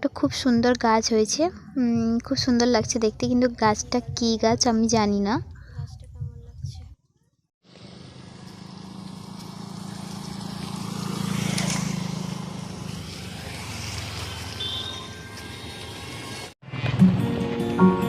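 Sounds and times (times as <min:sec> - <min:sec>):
vehicle engine passing by: 0:07.6 - 0:17.8.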